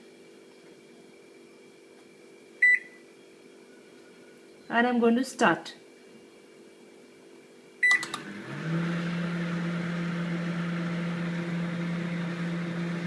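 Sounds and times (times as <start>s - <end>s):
microwave oven humming: 5.9s - 13.0s.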